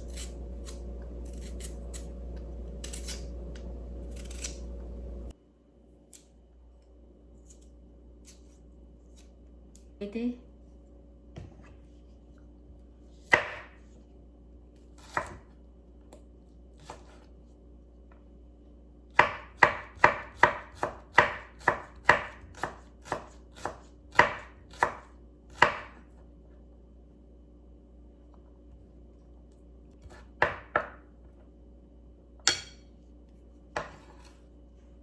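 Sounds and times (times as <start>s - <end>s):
knife chopping on cutting board: 13.3s - 13.8s, 15.0s - 15.5s, 19.2s - 26.0s, 30.0s - 31.1s, 33.7s - 34.4s.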